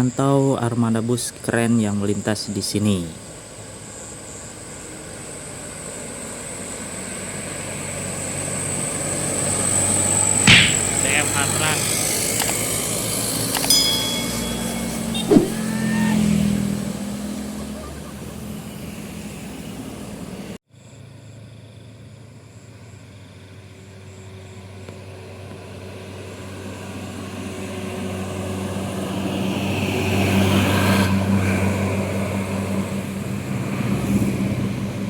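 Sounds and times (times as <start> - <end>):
heavy diesel engine approaching: 14.5 - 20.6.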